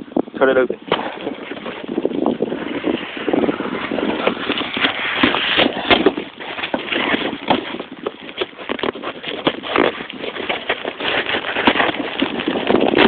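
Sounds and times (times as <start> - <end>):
packaging rustling and crinkling: 3.2 - 13.0.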